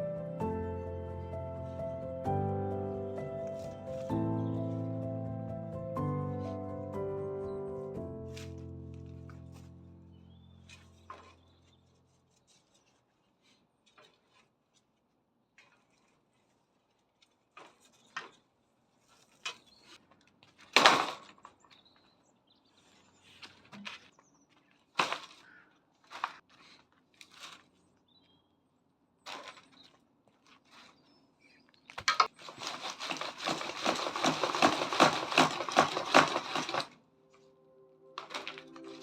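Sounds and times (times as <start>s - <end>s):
music: 0.0s - 11.1s, 35.6s - 39.0s
bird chirp: 9.4s - 12.9s, 21.6s - 24.8s, 27.8s - 28.7s
knocks and clatters from handling work: 31.9s - 37.0s.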